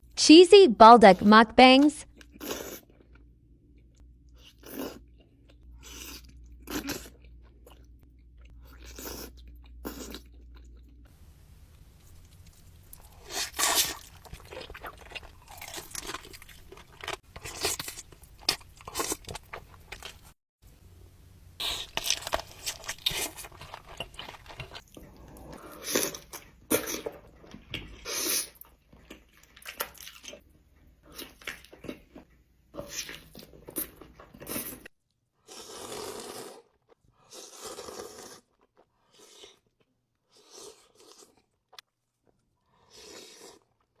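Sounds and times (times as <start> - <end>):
crunchy chewing: 4.4 - 11.0, 12.0 - 20.4, 21.6 - 27.2.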